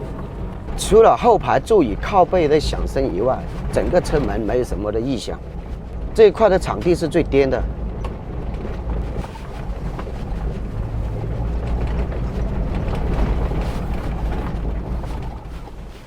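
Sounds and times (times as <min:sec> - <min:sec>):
vehicle rumble on rough ground: 0:00.0 - 0:16.0
seat backrest knocks and rattles: 0:07.7 - 0:16.0.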